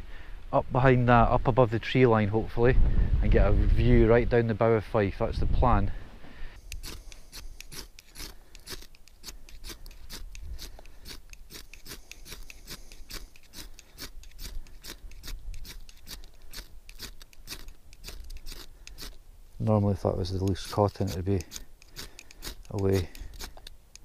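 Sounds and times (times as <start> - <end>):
ferro rod scraping: 6.6 - 24.0.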